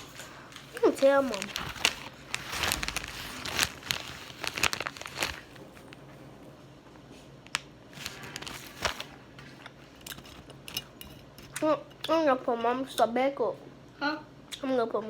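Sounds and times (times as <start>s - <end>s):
packaging crinkling: 0.0s - 6.1s, 7.4s - 9.2s.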